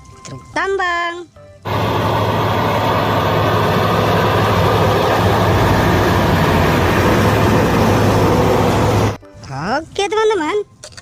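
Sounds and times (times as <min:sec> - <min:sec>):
truck engine humming: 0:01.6 - 0:09.2.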